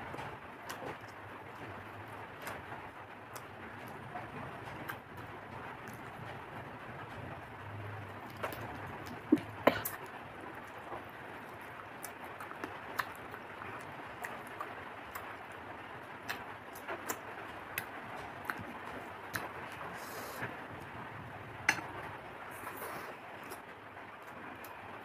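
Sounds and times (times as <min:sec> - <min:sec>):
steady background hiss: 0:07.0 - 0:25.0.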